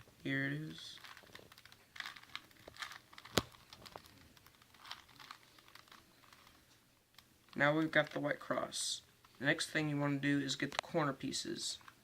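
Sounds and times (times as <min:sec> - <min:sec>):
puzzle cube twisting clicks: 0:01.0 - 0:06.6.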